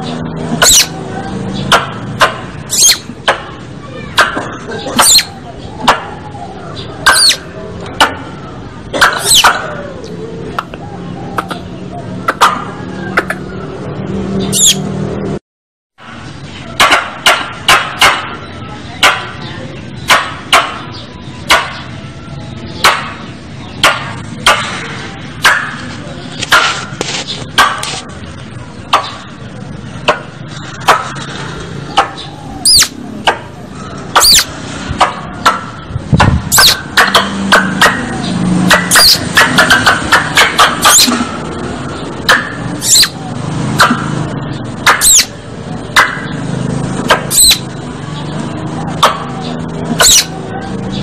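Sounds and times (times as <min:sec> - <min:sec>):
squirrel chipping calls: 0:00.5 - 0:08.3, 0:08.9 - 0:10.8, 0:14.4 - 0:14.9, 0:31.9 - 0:33.4, 0:34.0 - 0:34.6, 0:35.4 - 0:41.2, 0:42.2 - 0:43.9, 0:44.6 - 0:45.4, 0:46.0 - 0:47.8, 0:48.9 - 0:50.4.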